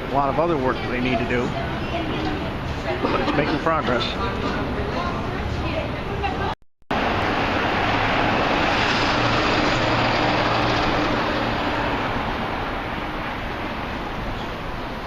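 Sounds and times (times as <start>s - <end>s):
street traffic: 0.0s - 15.0s
heavy vehicle engine hum: 6.9s - 15.0s.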